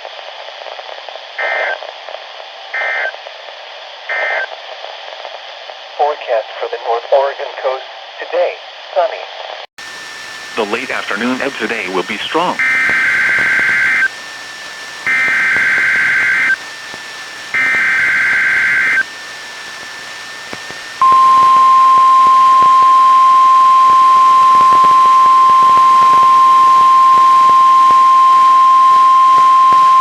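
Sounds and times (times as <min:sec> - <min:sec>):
steady warning alarm tone: 0:09.9 - 0:20.4, 0:21.0 - 0:30.0
buzzy digital data bursts: 0:09.9 - 0:30.0.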